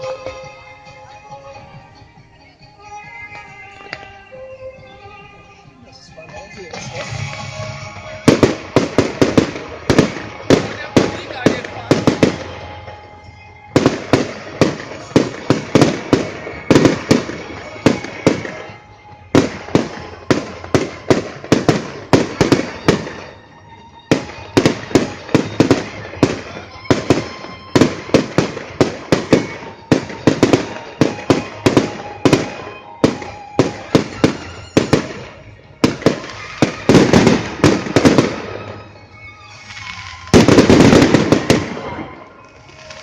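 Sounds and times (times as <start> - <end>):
fireworks banging: 0.0 - 1.6, 6.2 - 43.0.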